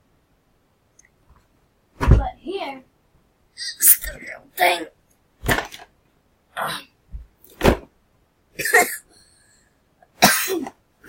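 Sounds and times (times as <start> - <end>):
dull thud: 2.0 - 2.4, 7.1 - 7.9.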